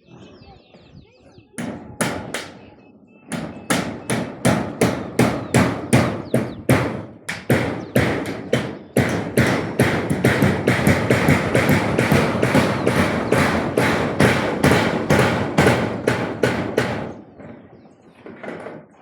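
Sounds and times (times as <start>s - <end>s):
hammer blows: 3.3s - 17.2s.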